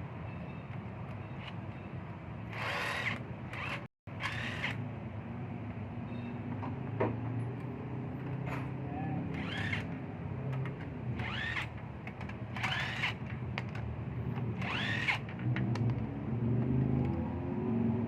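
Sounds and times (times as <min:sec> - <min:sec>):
power drill whining: 0:02.5 - 0:04.8, 0:09.3 - 0:09.9, 0:11.2 - 0:11.8, 0:12.6 - 0:13.3, 0:14.6 - 0:15.3.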